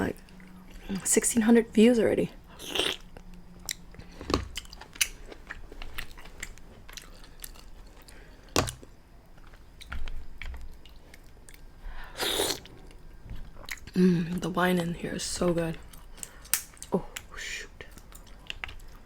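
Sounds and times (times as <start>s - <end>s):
chewing and lip-smacking: 2.6s - 14.0s, 17.9s - 19.0s.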